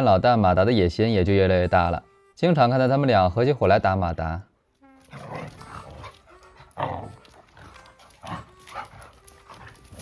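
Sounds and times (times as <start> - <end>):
dogs scuffling: 5.0 - 10.0
dogs growling and snarling: 5.1 - 10.0.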